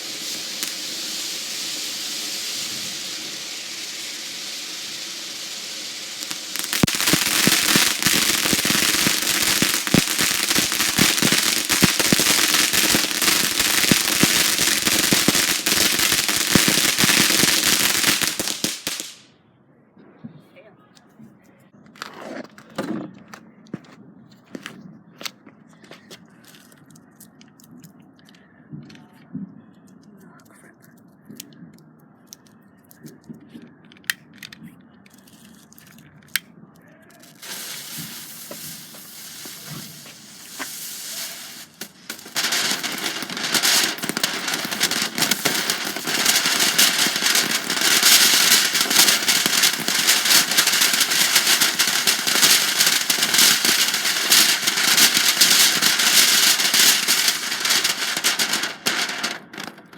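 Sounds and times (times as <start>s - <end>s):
hiss: 0.0s - 19.2s, 37.3s - 59.4s
firework crackling: 0.0s - 19.3s, 37.2s - 59.9s.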